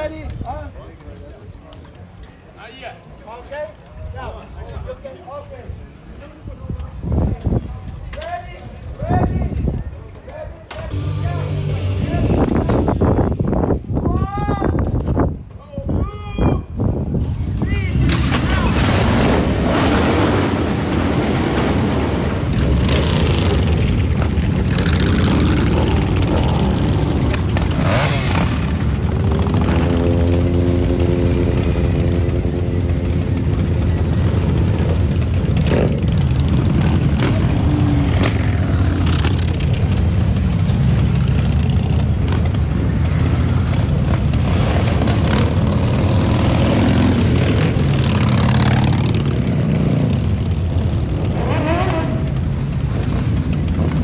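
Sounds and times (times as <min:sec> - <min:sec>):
motorcycle engines revving: 0:10.7 - 0:13.9, 0:17.2 - 0:54.0.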